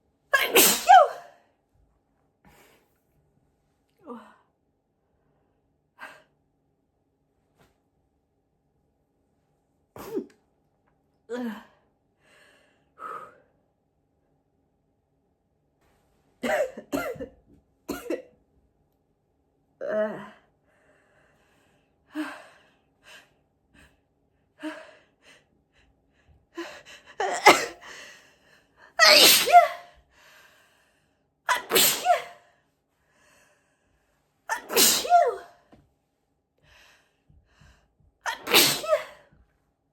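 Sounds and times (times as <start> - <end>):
person sneezing: 0.4 - 1.3, 10.0 - 10.3, 27.2 - 27.9, 29.0 - 29.9, 31.5 - 32.4, 34.5 - 35.6, 38.3 - 39.3.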